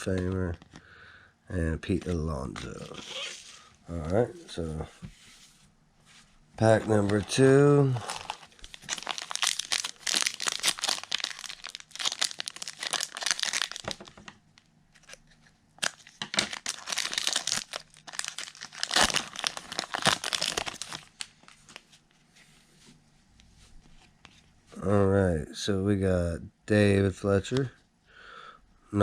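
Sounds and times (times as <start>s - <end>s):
wrapper tearing and crinkling: 6.8s - 14.2s, 15.8s - 21.3s.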